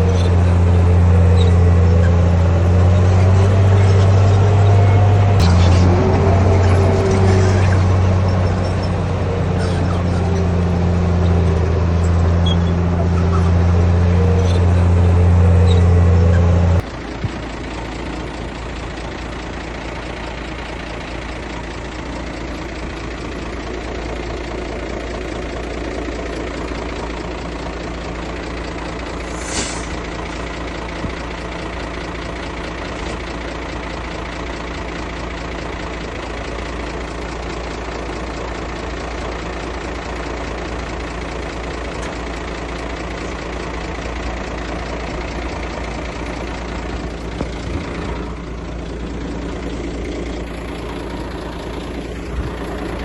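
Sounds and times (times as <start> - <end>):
diesel engines running: 0.0 - 53.0
short hiss: 29.2 - 30.0.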